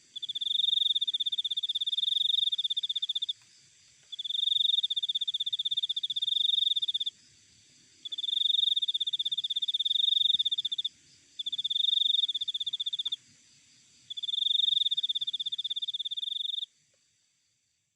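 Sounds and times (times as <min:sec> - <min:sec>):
faint steady high hiss: 0:00.0 - 0:17.9
cricket trilling: 0:00.1 - 0:16.7.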